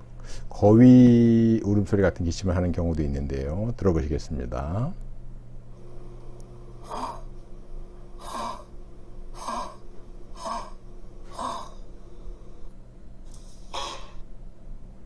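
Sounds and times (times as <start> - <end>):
dog honking cough: 8.2 - 8.7, 9.4 - 9.8, 10.4 - 11.8, 13.7 - 14.2.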